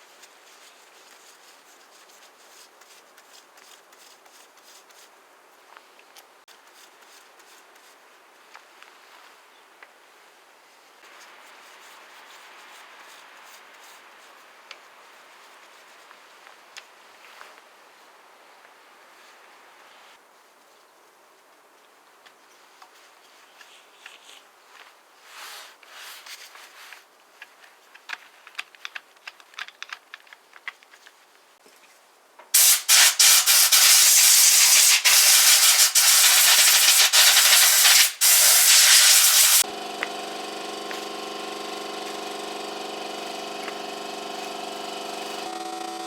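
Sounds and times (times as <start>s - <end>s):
faint handling clicks: 26.9s - 31.2s
pressurized hissing: 32.6s - 39.6s.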